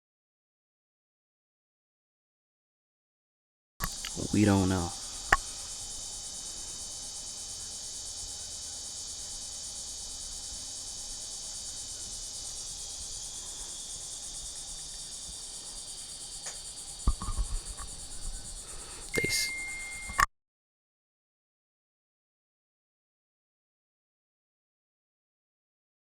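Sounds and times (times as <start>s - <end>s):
cricket chorus chirring: 3.8s - 20.3s.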